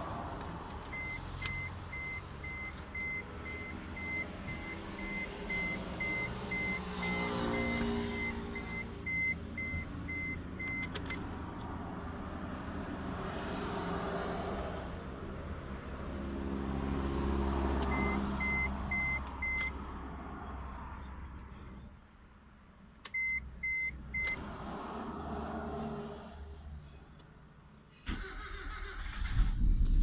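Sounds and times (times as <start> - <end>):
car warning chime beeping: 0.9 - 11.3, 17.8 - 19.8, 23.1 - 24.4.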